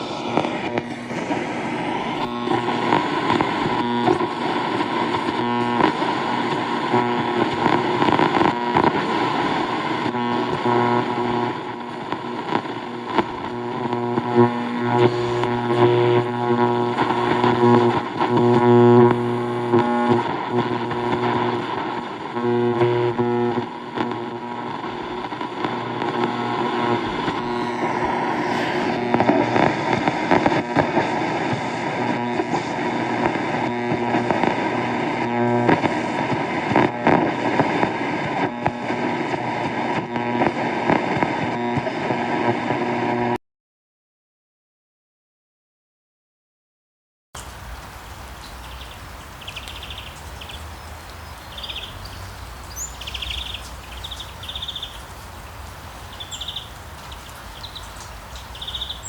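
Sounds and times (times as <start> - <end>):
engine running: 0.0 - 36.2.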